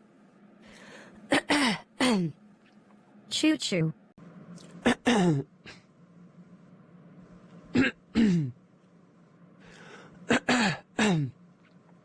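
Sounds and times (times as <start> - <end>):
man clearing his throat: 4.8 - 5.5, 7.7 - 8.6, 10.3 - 11.4.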